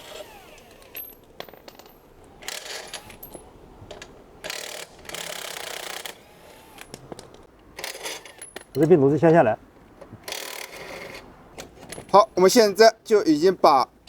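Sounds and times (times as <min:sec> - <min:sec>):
metal parts clinking: 0:00.7 - 0:06.0, 0:06.8 - 0:09.0.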